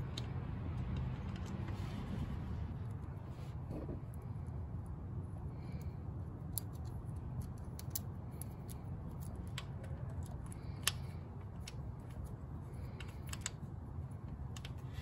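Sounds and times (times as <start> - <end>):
steady low rumble: 0.0 - 15.0
light clicks and ticks: 6.5 - 15.0.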